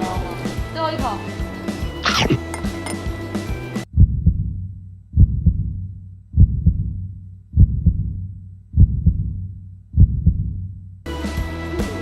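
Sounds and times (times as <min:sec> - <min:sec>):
heartbeat thumps: 0:03.9 - 0:10.7.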